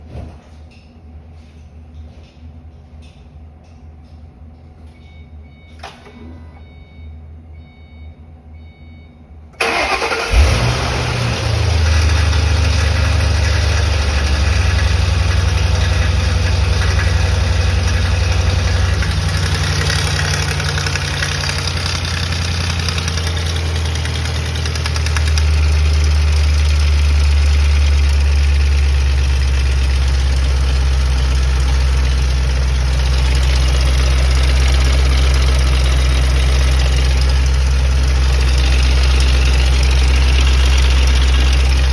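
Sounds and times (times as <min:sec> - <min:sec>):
car engine cranking: 0:09.6 - 0:41.9
car engine idling: 0:09.6 - 0:41.9
engine rattle: 0:09.6 - 0:41.9.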